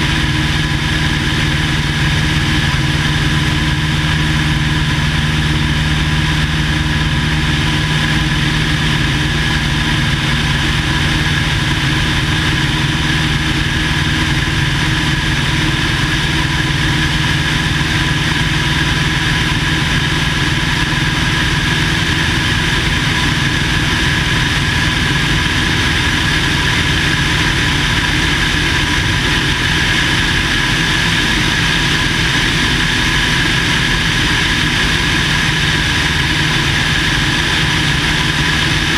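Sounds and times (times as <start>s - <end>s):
light aircraft engine and propeller: 0.0s - 38.9s.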